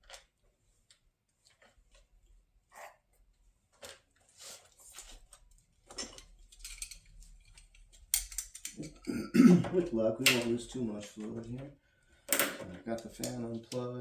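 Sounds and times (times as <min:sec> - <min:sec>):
hand tools clicking and scraping: 0:06.0 - 0:09.1.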